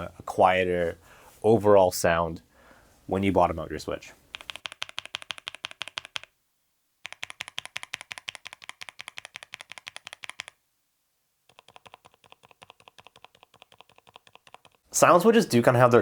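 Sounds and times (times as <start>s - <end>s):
fast typing on mechanical keyboard: 4.3s - 6.3s, 7.0s - 10.6s, 11.5s - 14.8s.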